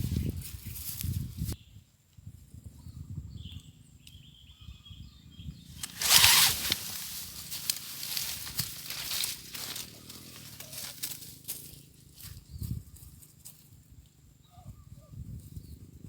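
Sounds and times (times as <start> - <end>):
rustling and handling noise: 5.8 - 12.4.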